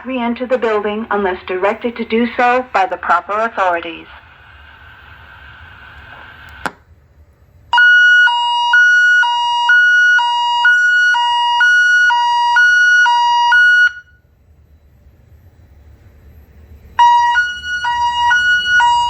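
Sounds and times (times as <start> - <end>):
two-tone alternating alarm: 7.8 - 14.2, 17.0 - 19.0.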